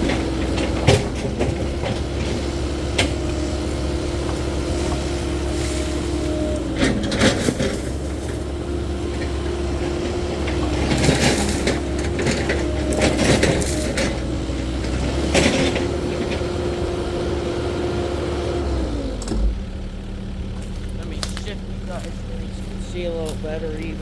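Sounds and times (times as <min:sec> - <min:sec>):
excavator diesel engine running: 0:00.0 - 0:24.0
branches cracking and snapping: 0:02.7 - 0:08.6, 0:10.0 - 0:15.6, 0:19.3 - 0:22.2.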